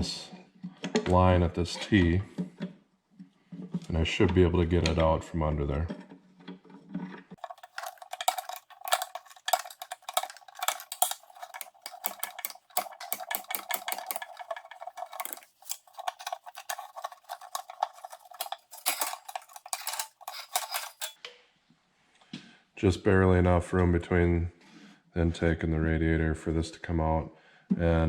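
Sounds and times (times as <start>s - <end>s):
metal tools clinking and scraping: 7.4s - 21.2s.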